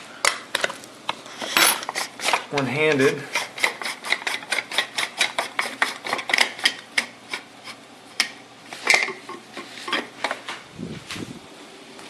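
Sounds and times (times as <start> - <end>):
rasping scraping strokes on metal: 3.0 - 6.2.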